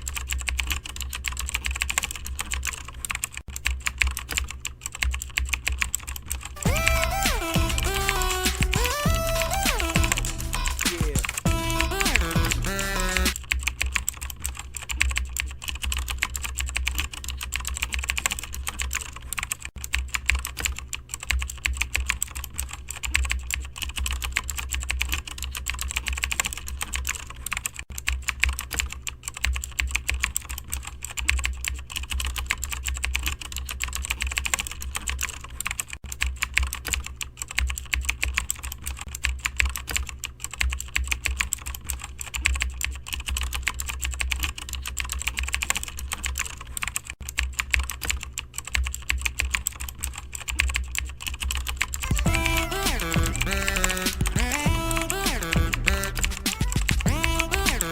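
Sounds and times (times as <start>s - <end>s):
fast keyboard typing: 0.0s - 57.9s
steady low hum: 51.3s - 57.9s.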